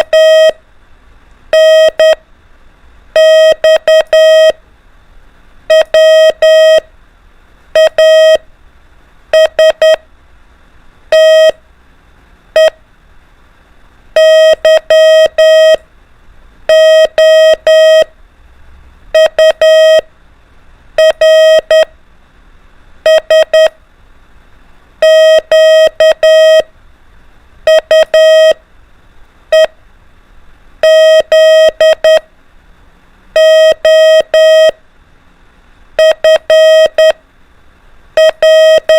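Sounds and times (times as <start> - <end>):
morse code beeps: 0.0 - 0.6, 1.5 - 2.2, 3.2 - 4.6, 5.7 - 6.9, 7.8 - 8.4, 9.4 - 10.0, 11.1 - 11.6, 12.6 - 12.8, 14.2 - 15.8, 16.7 - 18.1, 19.2 - 20.1, 21.0 - 21.9, 23.0 - 23.8, 25.0 - 26.7, 27.7 - 28.6, 29.5 - 29.7, 30.8 - 32.3, 33.4 - 34.8, 36.0 - 37.2, 38.2 - 38.9.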